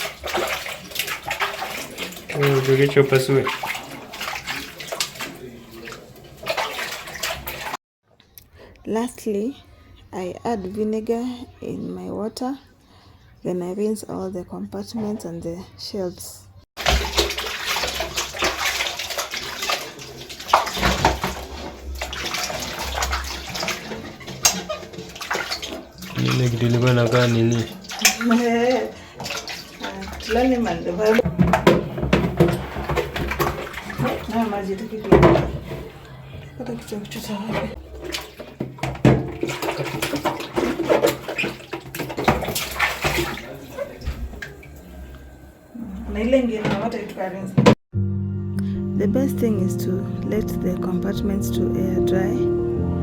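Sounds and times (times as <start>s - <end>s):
water splashing and sloshing: 0.0s - 7.8s, 16.8s - 47.8s.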